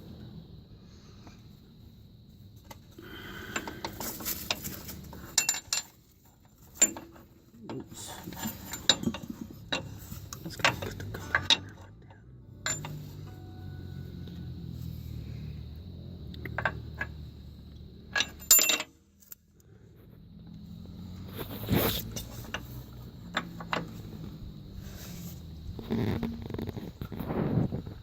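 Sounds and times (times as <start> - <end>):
hand tools clanking on metal: 3.1 - 13.9, 18.0 - 19.0.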